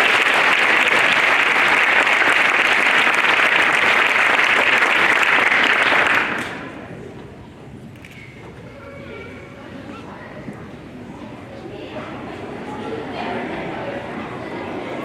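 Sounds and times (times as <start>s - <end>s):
audience applauding: 0.0s - 6.8s.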